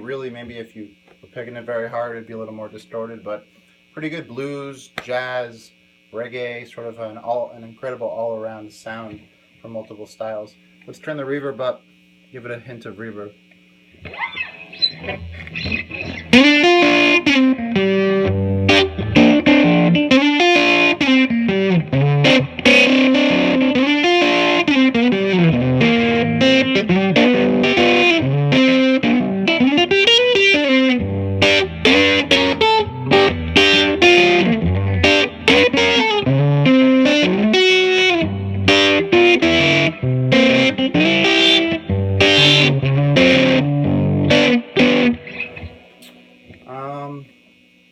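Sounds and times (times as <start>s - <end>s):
overdriven electric guitar blues lead: 14.0s - 46.7s.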